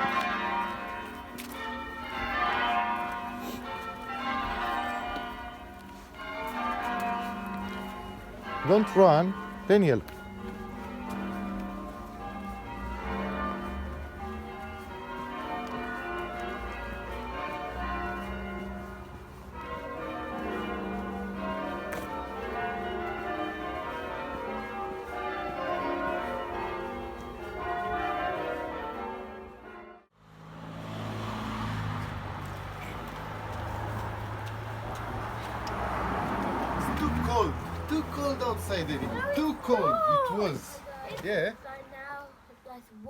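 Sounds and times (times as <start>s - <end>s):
bells ringing in a peal: 0.0s - 30.1s, 32.5s - 41.6s.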